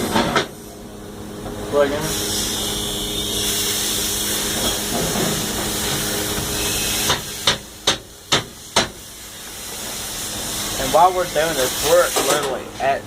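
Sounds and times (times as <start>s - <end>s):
sharp metallic knocks: 6.4s - 9.0s.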